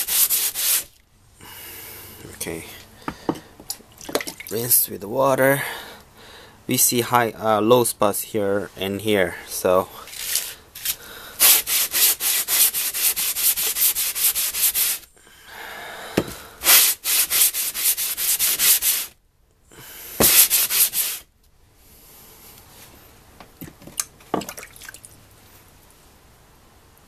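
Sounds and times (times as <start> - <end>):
stone rasping on wet sandpaper: 0.0 - 0.9, 10.1 - 15.1, 16.7 - 19.1, 20.2 - 21.2.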